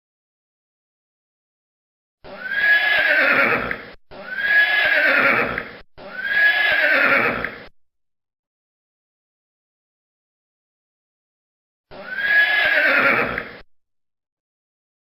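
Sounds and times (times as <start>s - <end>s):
horse whinnying: 2.3s - 7.7s, 11.9s - 13.6s.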